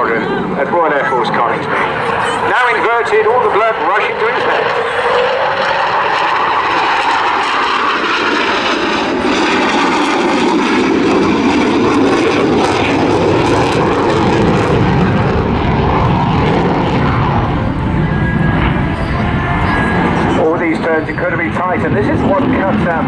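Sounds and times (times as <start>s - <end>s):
jet engine roar: 0.0s - 23.0s.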